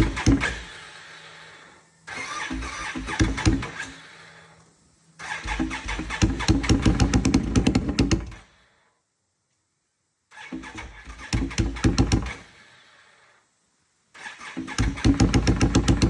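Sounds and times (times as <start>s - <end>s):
engine cranking and sputtering: 0.0s - 4.5s, 5.2s - 8.4s, 10.3s - 12.8s, 14.2s - 16.0s.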